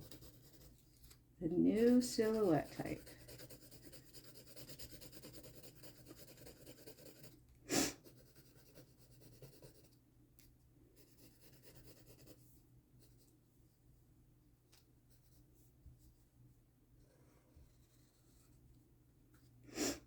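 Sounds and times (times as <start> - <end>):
charcoal scratching on paper: 0.0 - 10.0, 11.0 - 12.4
sharp puff of breath: 7.7 - 8.0, 19.7 - 20.0.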